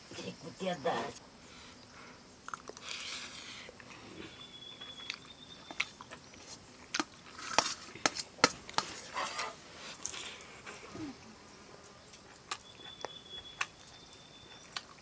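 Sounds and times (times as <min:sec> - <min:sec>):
chewing: 0:02.4 - 0:10.9, 0:12.1 - 0:15.0.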